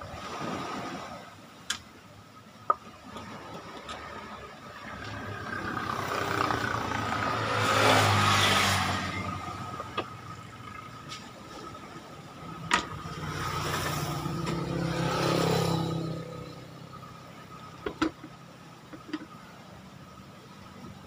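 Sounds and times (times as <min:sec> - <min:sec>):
motor vehicle passing: 0:03.2 - 0:17.8.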